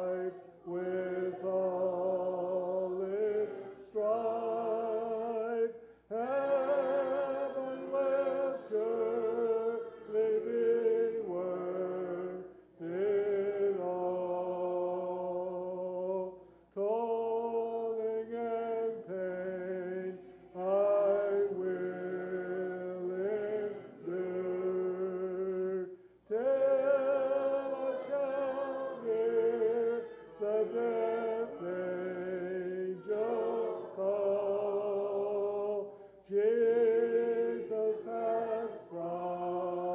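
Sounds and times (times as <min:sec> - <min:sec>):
congregation singing a hymn: 0:00.0 - 0:39.9.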